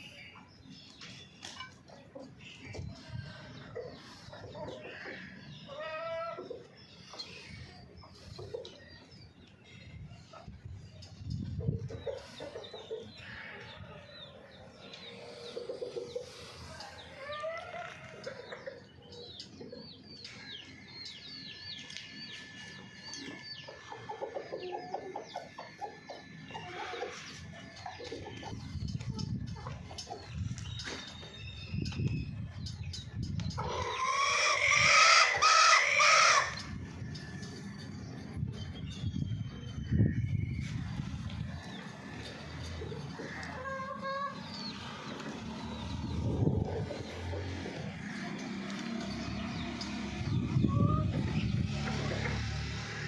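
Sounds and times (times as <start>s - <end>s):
hens clucking: 14.6s - 19.9s, 33.5s - 36.7s, 41.6s - 45.4s
chicken calling: 33.6s - 36.6s.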